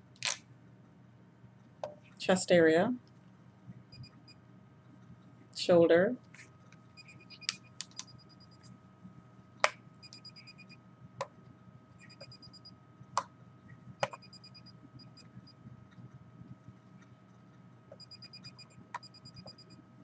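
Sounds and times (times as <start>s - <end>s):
faint electronic whine: 3.9s - 4.4s, 6.9s - 9.3s, 10.0s - 11.0s, 11.8s - 17.1s, 17.9s - 20.0s
rapid high beeps: 7.0s - 8.6s, 10.0s - 10.8s, 12.0s - 12.7s, 14.2s - 15.6s, 18.0s - 19.8s.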